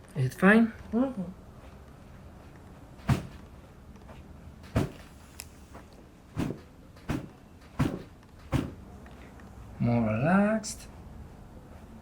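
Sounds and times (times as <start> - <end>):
knocks and thuds on a back: 3.0 - 3.4, 4.6 - 5.1, 6.3 - 8.8.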